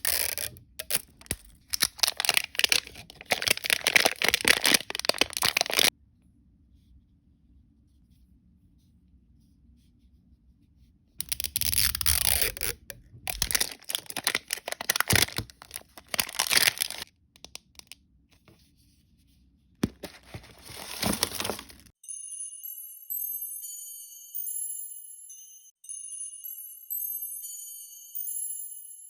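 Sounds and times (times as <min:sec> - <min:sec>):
packaging tearing and crinkling: 0:00.0 - 0:05.9, 0:11.2 - 0:18.0, 0:19.8 - 0:21.9
chiming jingle: 0:22.0 - 0:29.0.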